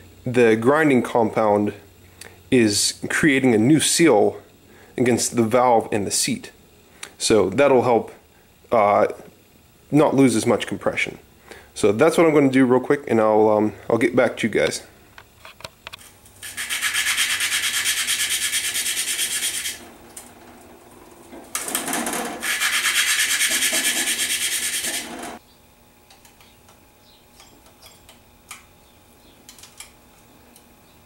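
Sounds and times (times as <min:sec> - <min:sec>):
valve lapping gritty rasp: 0:16.4 - 0:19.9, 0:22.4 - 0:25.4.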